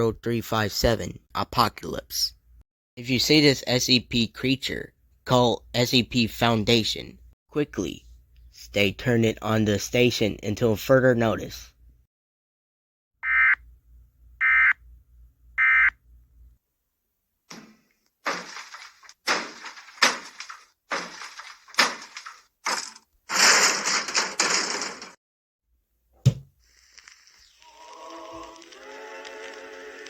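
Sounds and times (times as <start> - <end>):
crash: 17.5 - 25.2.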